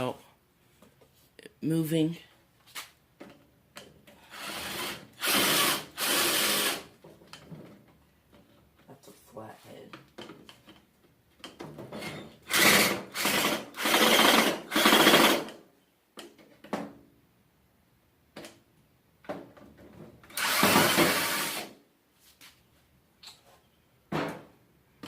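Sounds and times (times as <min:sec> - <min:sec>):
power drill whirring: 0:04.3 - 0:06.9, 0:12.1 - 0:15.6, 0:20.3 - 0:21.8.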